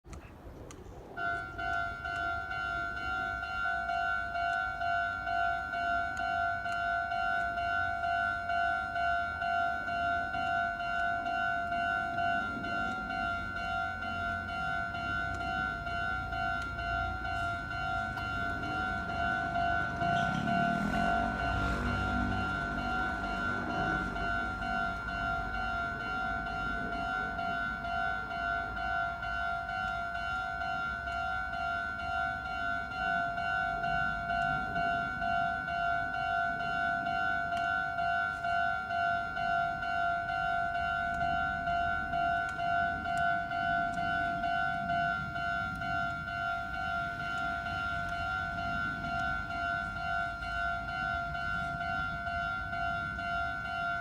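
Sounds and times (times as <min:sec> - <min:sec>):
level crossing warning bell: 0:00.3 - 0:54.0.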